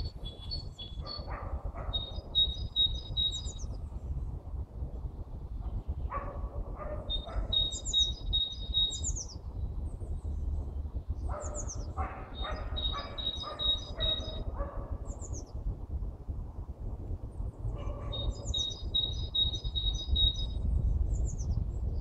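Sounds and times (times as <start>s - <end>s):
bird whistles: 0.0s - 1.3s, 1.9s - 3.7s, 7.0s - 9.4s, 11.4s - 14.5s, 18.1s - 20.6s
harsh bird calls: 0.0s - 3.8s, 5.7s - 9.9s, 10.6s - 15.6s, 17.8s - 21.5s
steady low rumble: 0.0s - 22.0s.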